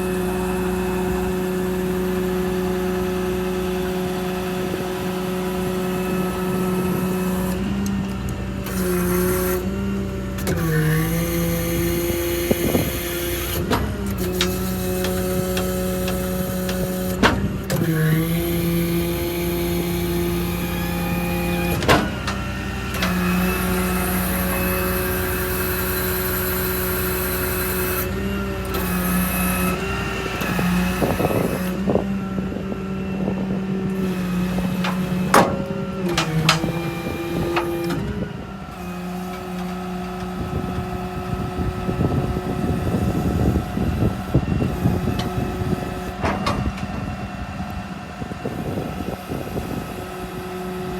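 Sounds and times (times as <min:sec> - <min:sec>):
hydraulic crane whine and drone: 0:00.0 - 0:50.9
sharp clunks of crane: 0:10.4 - 0:32.0, 0:34.0 - 0:47.3.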